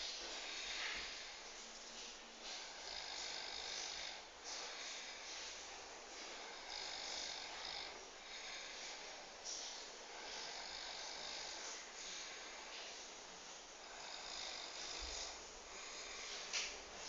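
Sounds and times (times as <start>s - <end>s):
man snoring: 2.6s - 5.2s, 6.4s - 9.0s, 10.1s - 12.6s, 13.8s - 16.5s.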